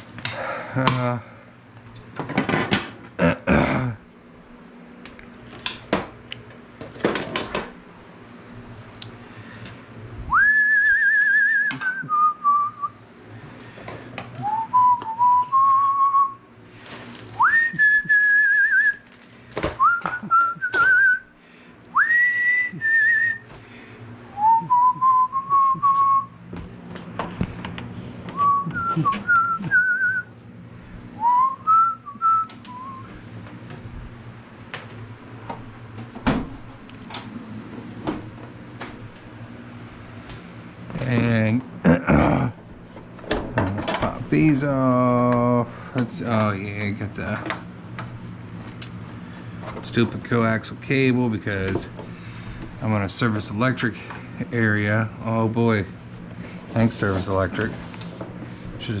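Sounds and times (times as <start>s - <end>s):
person whistling a tune: 10.3s - 13.0s, 14.4s - 16.4s, 17.4s - 19.0s, 19.8s - 21.3s, 22.0s - 23.5s, 24.3s - 26.4s, 28.3s - 30.3s, 31.2s - 33.1s.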